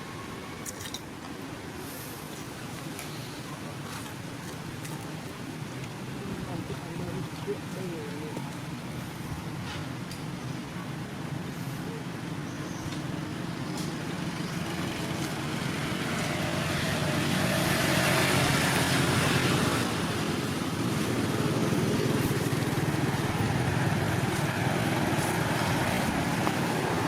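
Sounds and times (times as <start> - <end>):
road noise: 0.0 - 27.0
vehicle engine: 13.1 - 27.0.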